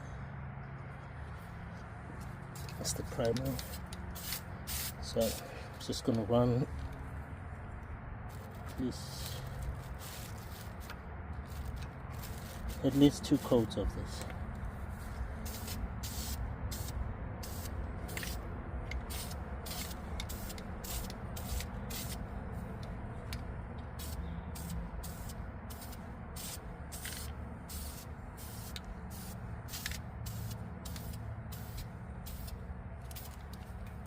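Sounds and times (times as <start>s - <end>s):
spray can hissing in bursts: 3.4s - 5.4s, 15.4s - 18.4s, 19.0s - 22.2s, 24.0s - 33.4s.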